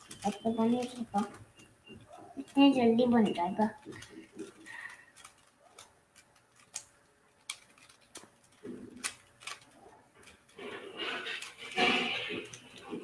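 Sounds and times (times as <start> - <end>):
puzzle cube clicking: 0.0 - 1.7, 2.4 - 10.6.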